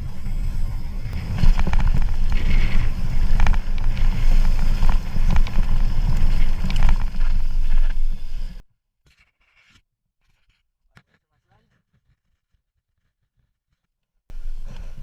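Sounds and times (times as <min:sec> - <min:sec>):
wind rumble on microphone: 0:00.0 - 0:08.6.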